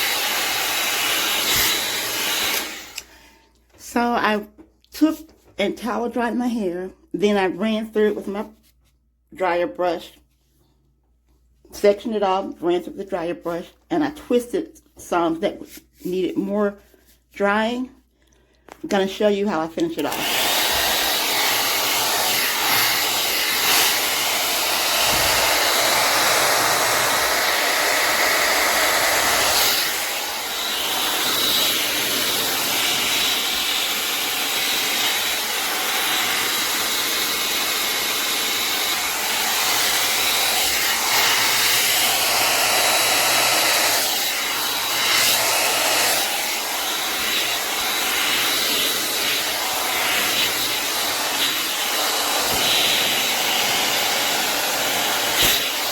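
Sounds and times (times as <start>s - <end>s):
hot air brush blowing: 0.0s - 3.4s, 20.0s - 55.9s.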